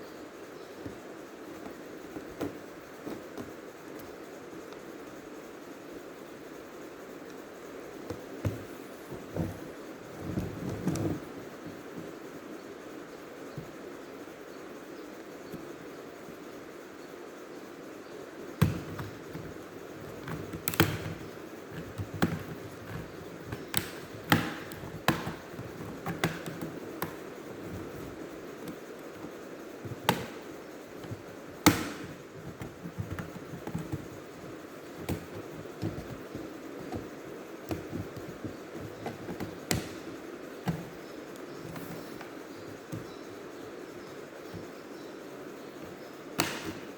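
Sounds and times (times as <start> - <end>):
steady background hiss: 0.0 - 46.9.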